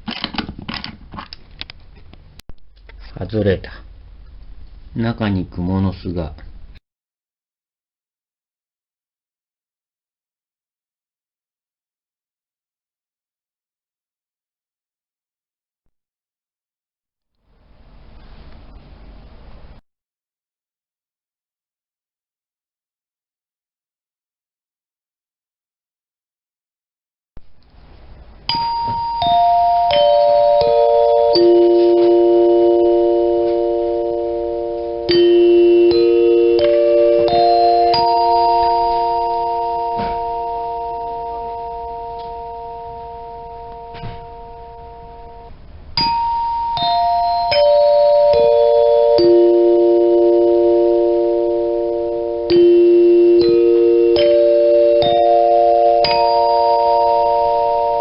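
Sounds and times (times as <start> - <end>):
dinner chime ringing: 28.5 - 58.0.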